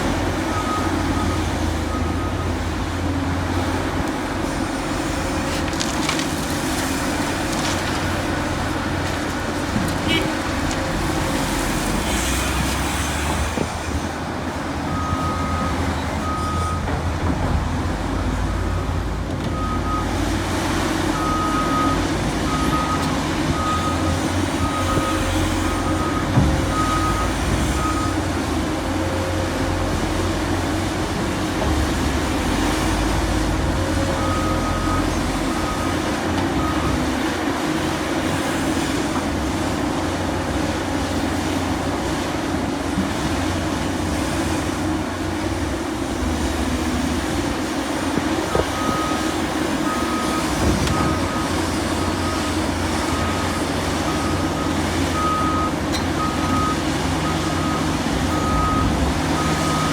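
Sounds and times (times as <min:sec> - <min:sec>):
heavy diesel machinery running: 0:00.0 - 0:59.9
reversing alarm beeping: 0:21.1 - 0:28.3, 0:48.5 - 0:59.9.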